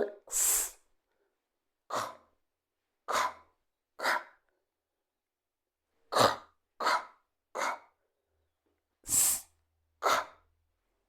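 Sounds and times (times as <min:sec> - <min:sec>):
person making breathy consonant sounds: 0:00.0 - 0:00.7.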